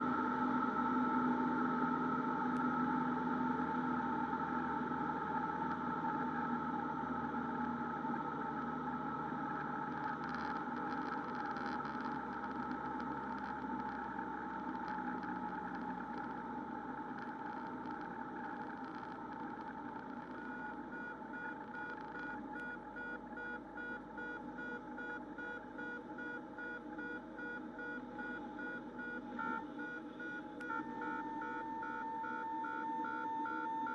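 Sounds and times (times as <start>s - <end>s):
beeping warning tone: 22.6s - 33.9s.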